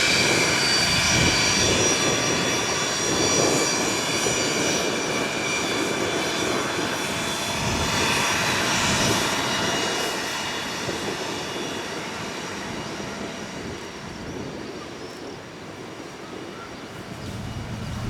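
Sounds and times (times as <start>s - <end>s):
rushing jet noise: 0.0s - 16.0s, 16.8s - 18.0s
jet engines whining: 0.0s - 18.0s.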